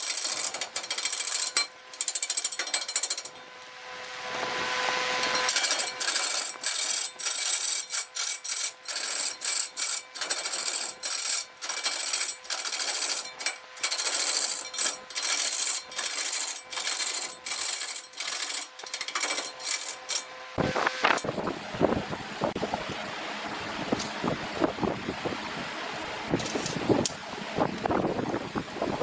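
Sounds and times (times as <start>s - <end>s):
lathe tool scraping wood: 4.3s - 21.2s.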